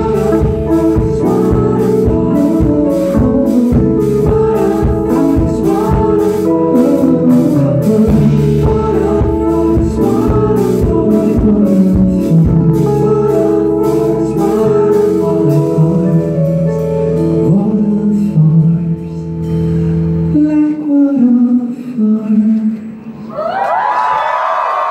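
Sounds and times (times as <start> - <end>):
live band with guitar and drums: 0.0 - 18.6
person singing: 0.0 - 19.5, 20.3 - 23.0.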